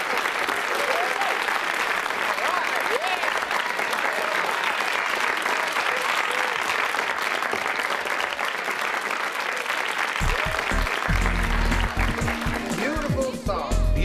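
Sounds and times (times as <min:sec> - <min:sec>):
audience applauding: 0:00.0 - 0:13.8
low music notes: 0:10.2 - 0:14.0.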